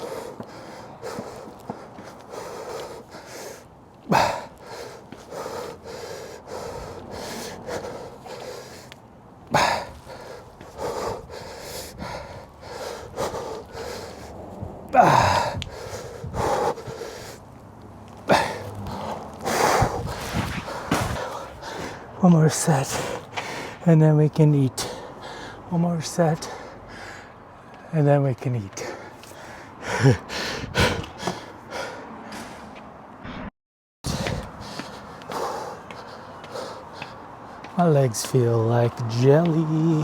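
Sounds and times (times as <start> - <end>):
person breathing hard: 0.0 - 17.5, 18.3 - 22.2, 22.8 - 23.8, 24.8 - 25.7, 26.4 - 27.9, 28.8 - 32.8, 34.1 - 37.7
person grunting: 14.9 - 15.6.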